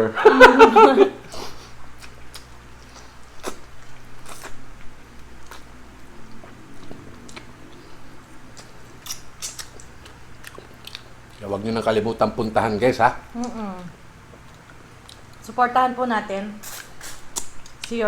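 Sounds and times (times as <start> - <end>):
biting and chewing: 2.0 - 11.5.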